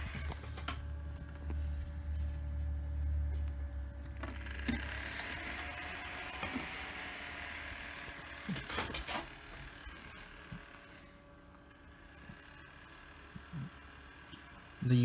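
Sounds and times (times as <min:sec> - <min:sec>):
low hum: 0:00.0 - 0:08.7.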